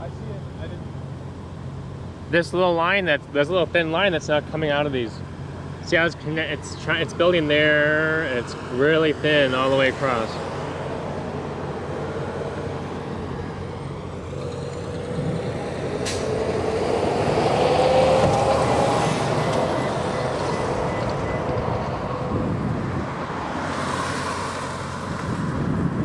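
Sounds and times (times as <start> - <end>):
large vehicle going by: 0.0 - 26.0
road and engine noise: 0.0 - 26.0
sharp click: 16.0 - 16.3.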